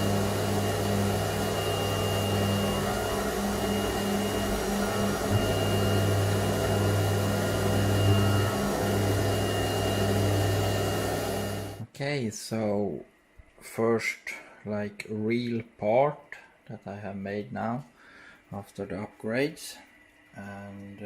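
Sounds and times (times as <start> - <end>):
milling machine cutting metal: 0.0 - 11.8
strong steady hum: 0.0 - 11.9.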